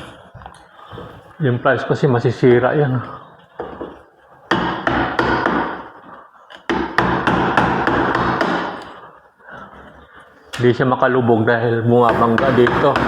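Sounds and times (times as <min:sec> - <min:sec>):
hammer striking wooden door: 0:04.5 - 0:05.9, 0:06.7 - 0:08.8.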